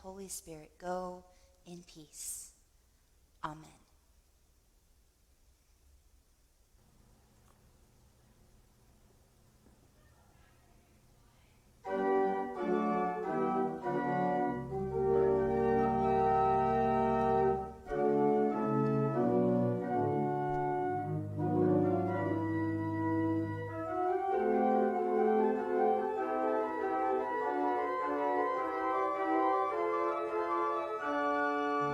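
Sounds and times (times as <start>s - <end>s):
organ playing sustained chords: 11.8s - 31.9s.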